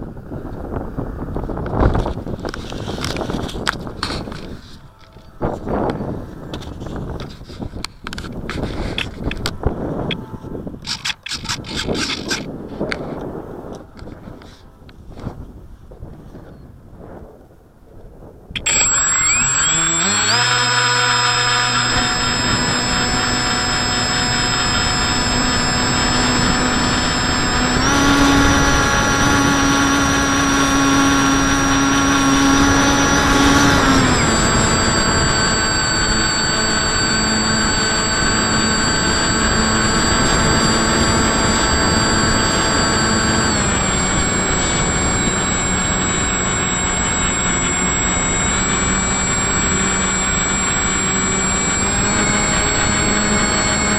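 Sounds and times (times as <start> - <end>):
model aircraft motor and propeller: 0.0 - 15.4, 18.6 - 53.9
thin high whine: 18.6 - 53.9.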